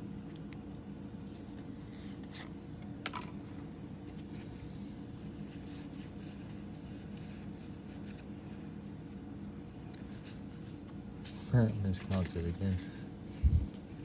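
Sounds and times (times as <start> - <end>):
low hum: 12.8 - 14.0.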